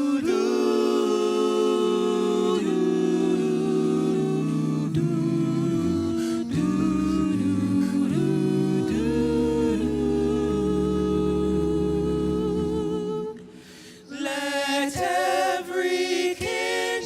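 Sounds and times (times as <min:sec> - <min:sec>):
vocal ensemble singing harmony: 0:00.0 - 0:17.0
deep bass vocal line: 0:03.2 - 0:13.5.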